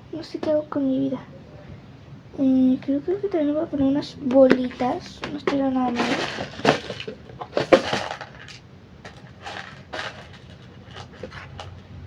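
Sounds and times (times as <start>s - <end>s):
plastic beads rattling: 4.6s - 11.8s.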